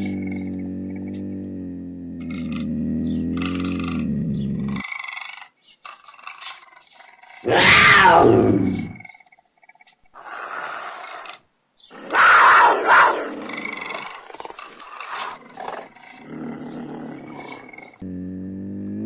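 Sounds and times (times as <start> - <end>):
deep pitched growl: 0.0 - 4.8, 7.5 - 9.0, 15.4 - 19.0
puma snarling: 0.0 - 19.0.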